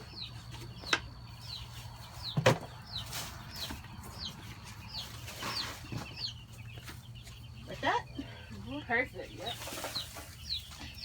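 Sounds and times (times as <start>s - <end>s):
chicks peeping: 0.0s - 11.0s.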